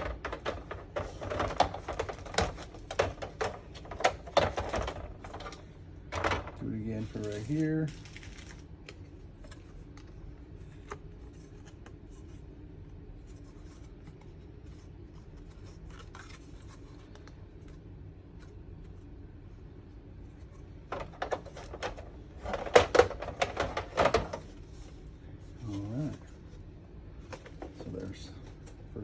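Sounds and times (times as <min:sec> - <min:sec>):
plastic clicks and knocks: 0:00.0 - 0:06.6, 0:20.9 - 0:24.5.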